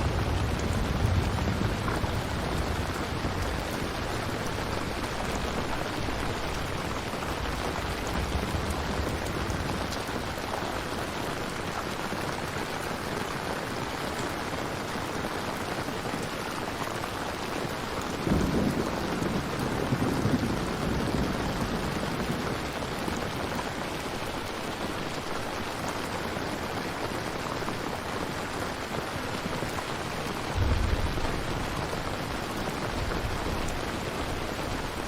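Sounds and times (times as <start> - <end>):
thunder rumble: 0.0 - 11.0, 18.1 - 23.8, 30.3 - 35.0
steady rain falling: 0.0 - 35.0.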